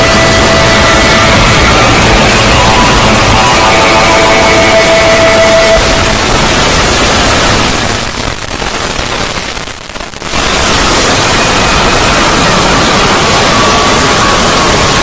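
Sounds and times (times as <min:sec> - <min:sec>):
held synthetic tones: 0:00.0 - 0:08.6
harsh static-like noise: 0:00.0 - 0:15.0.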